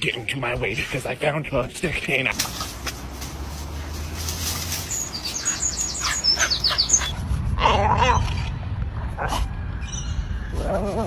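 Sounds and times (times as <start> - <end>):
bird chirping high notes: 4.7 - 7.1.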